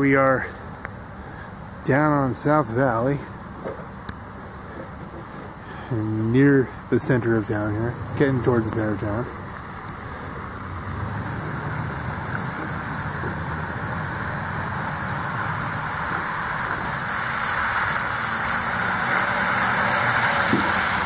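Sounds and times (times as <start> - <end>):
tyres hissing through slush: 4.6 - 21.0.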